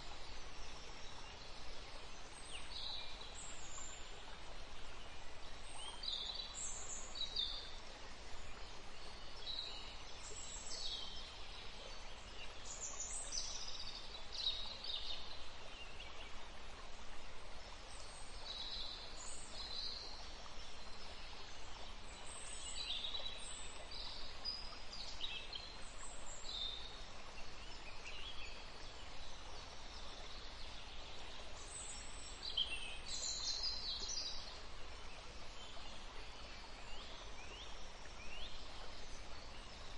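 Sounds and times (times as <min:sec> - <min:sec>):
steady background hiss: 0:00.0 - 0:39.9.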